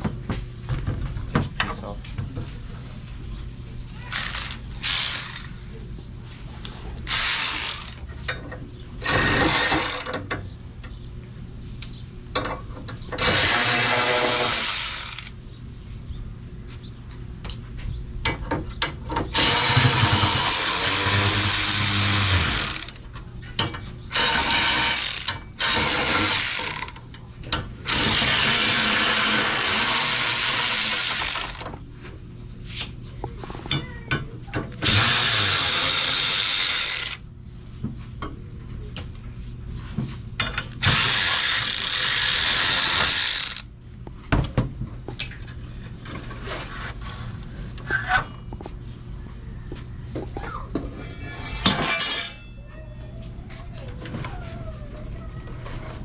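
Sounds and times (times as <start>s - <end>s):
power tool bursts: 4.1s - 5.5s, 7.1s - 8.0s, 9.0s - 10.1s, 13.2s - 15.4s, 19.4s - 23.0s, 24.1s - 27.0s, 27.9s - 31.7s, 34.8s - 37.2s, 40.8s - 43.6s.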